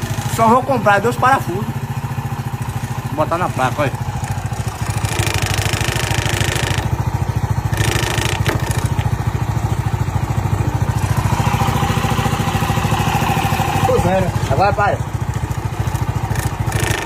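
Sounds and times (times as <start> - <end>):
motorcycle engine idling: 0.0 - 17.0.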